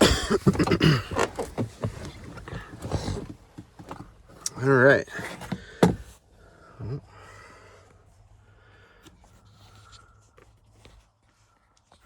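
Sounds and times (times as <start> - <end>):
faint rustling: 0.0 - 6.3.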